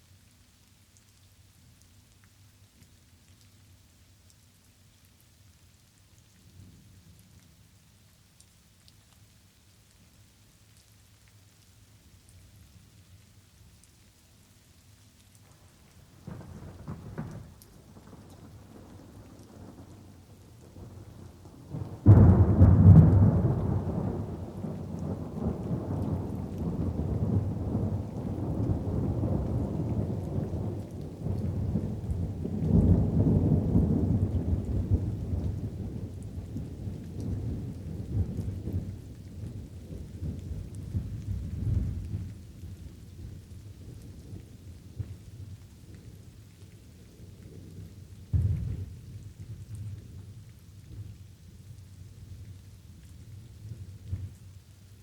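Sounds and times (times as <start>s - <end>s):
light rain falling: 0.0s - 55.0s
thunder rumbling: 16.2s - 42.4s, 48.3s - 50.0s
loud thunder clap: 22.0s - 24.3s.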